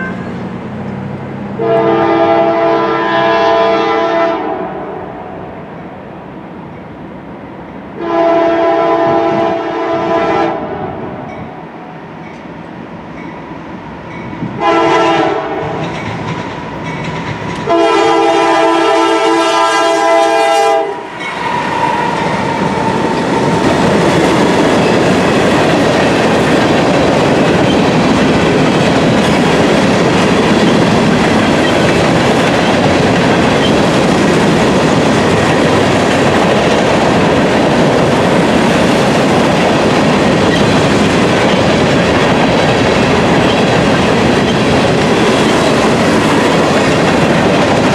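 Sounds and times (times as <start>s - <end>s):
locomotive horn blasts: 1.6s - 5.1s, 8.0s - 11.1s, 14.6s - 15.8s, 17.6s - 23.7s
wheels clattering over rail joints: 15.6s - 17.8s, 21.2s - 47.9s
freight cars rumbling by: 21.0s - 47.9s.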